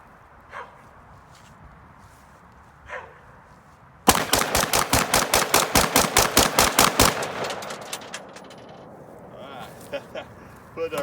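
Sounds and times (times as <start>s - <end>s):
rifle firing rapid shots: 4.1s - 9.0s.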